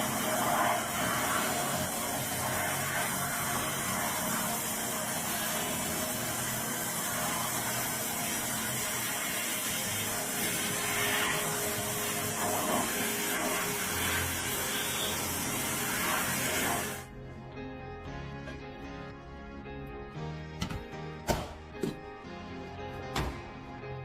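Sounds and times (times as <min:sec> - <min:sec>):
high-pressure jet hissing: 0:00.0 - 0:17.1.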